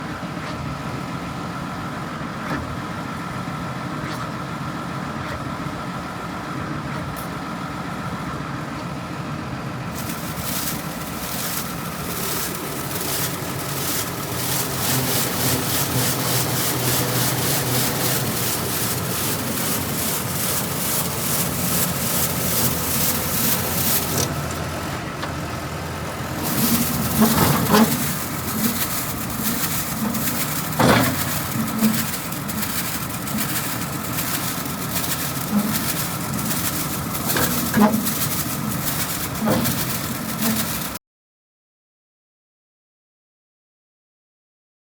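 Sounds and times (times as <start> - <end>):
engine running: 0.0 - 41.0
sweeper brush swishing: 10.0 - 24.6, 26.3 - 41.0.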